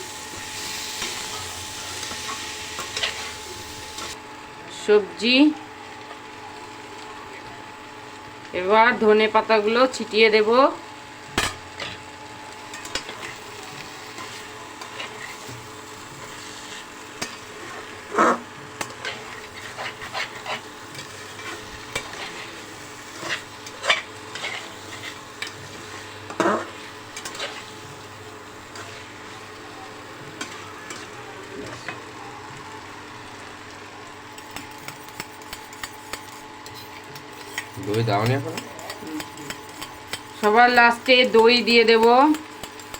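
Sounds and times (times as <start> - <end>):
food sizzling in frying: 0.0 - 42.9
spoon scraping a pan: 0.3 - 4.2, 12.7 - 29.6, 30.4 - 32.0, 34.3 - 42.9.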